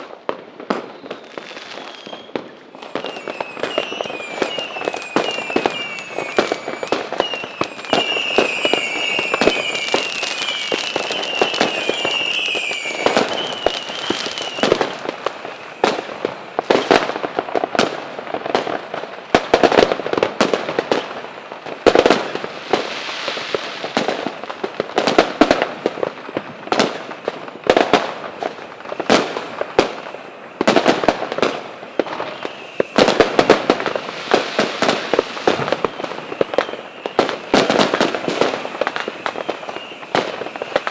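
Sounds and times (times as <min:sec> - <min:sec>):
firecrackers banging and crackling: 0:00.0 - 0:40.9
high warbling whistle: 0:01.0 - 0:14.8.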